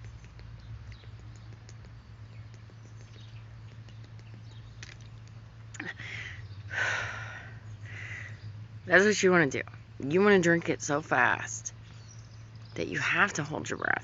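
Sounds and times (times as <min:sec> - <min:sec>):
swallowing clicks: 0:00.0 - 0:05.9
steady low hum: 0:00.0 - 0:14.0.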